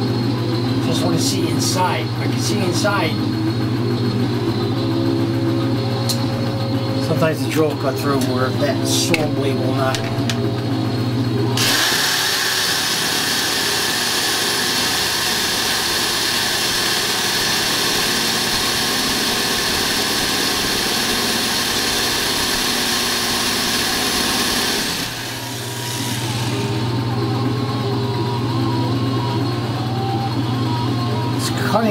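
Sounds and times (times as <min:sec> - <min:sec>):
electric drill grinding into steel: 0:11.6 - 0:27.0.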